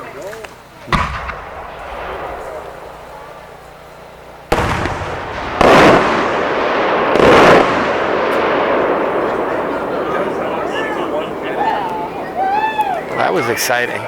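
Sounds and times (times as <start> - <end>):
firework booms: 0.8 - 13.1.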